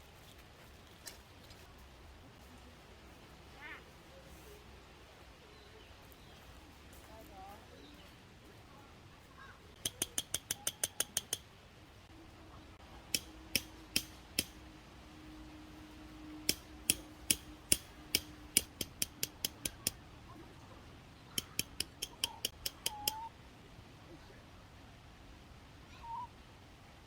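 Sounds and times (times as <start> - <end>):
sharp dry clicks: 9.8 - 11.5, 13.1 - 14.6, 16.4 - 20.0, 21.3 - 23.2.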